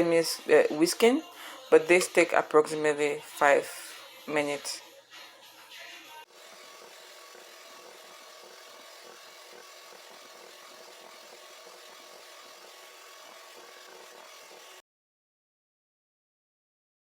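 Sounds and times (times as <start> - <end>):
electric hand mixer whisking: 6.2 - 14.8.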